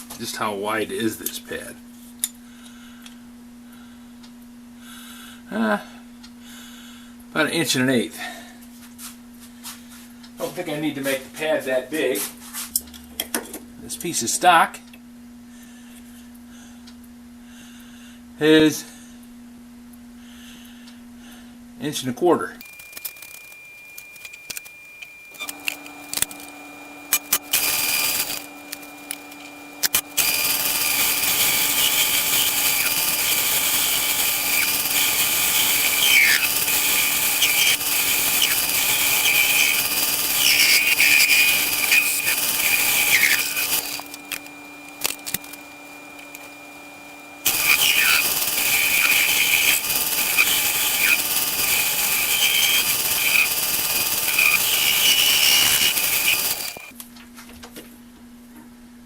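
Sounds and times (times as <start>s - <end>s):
motor hum: 22.7s - 57.0s
machine tool cutting steel: 27.1s - 45.6s, 47.4s - 56.9s.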